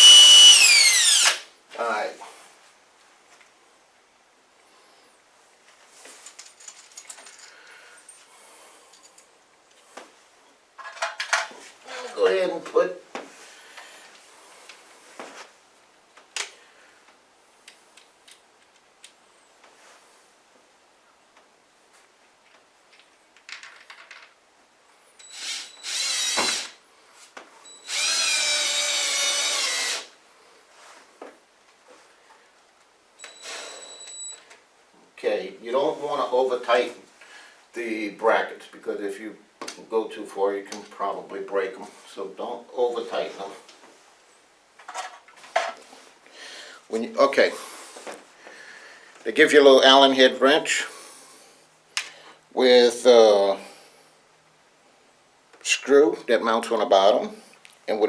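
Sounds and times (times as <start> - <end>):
power drill driving screws: 0.0 - 1.5, 25.2 - 26.8, 27.8 - 30.1
small metal parts clinking: 6.2 - 8.3.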